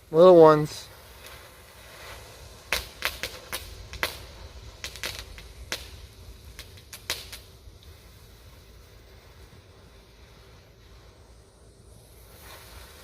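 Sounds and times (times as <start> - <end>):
firework pops and cracks: 0.9 - 8.4.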